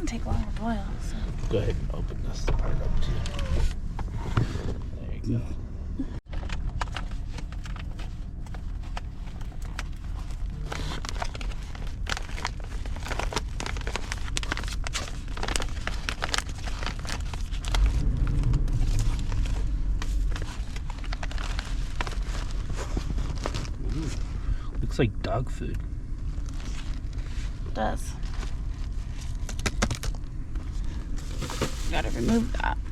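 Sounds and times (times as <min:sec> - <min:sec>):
steady low rumble: 0:00.0 - 0:32.9
foil pouch crinkling: 0:06.3 - 0:18.0.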